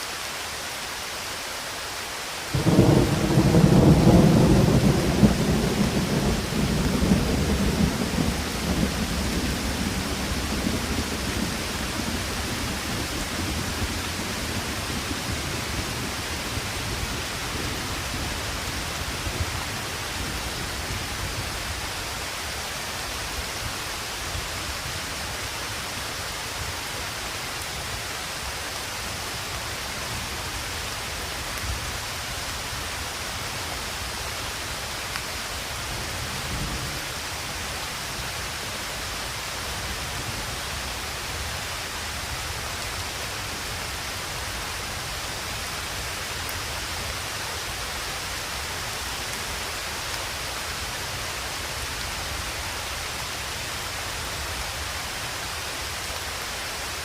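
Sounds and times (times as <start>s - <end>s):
rain falling: 0.0s - 57.0s
thunder rumbling: 2.5s - 20.4s.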